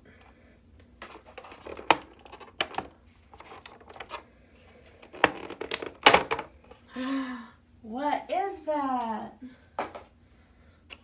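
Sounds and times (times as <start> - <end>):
packaging clicks and rustles: 1.0 - 4.2, 4.9 - 6.5.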